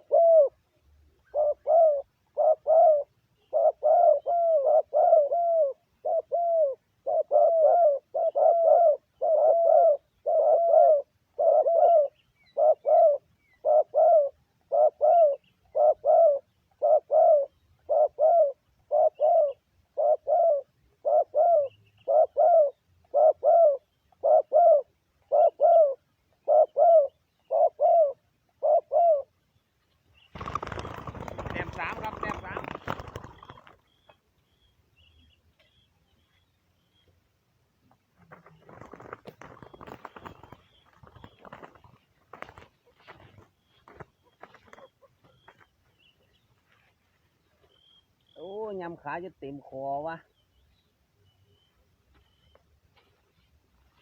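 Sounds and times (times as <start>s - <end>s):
dove cooing: 0.0s - 29.3s, 30.4s - 33.8s.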